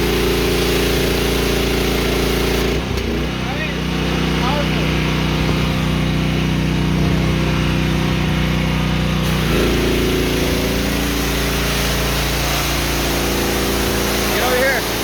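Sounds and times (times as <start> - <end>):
pressure washer engine running: 0.0 - 15.0
hiss: 9.2 - 15.0.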